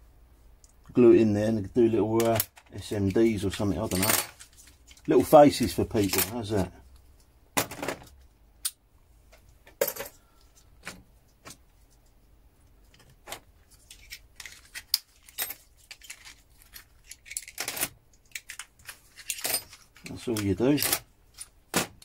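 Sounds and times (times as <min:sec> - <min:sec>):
metal relay parts clicking: 0:13.8 - 0:21.6.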